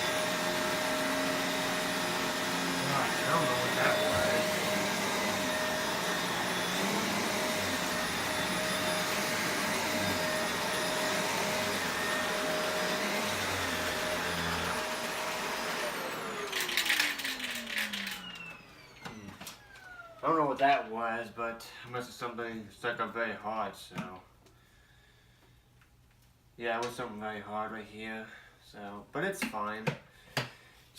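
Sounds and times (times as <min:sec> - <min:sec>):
vacuum cleaner running: 0:00.0 - 0:20.4.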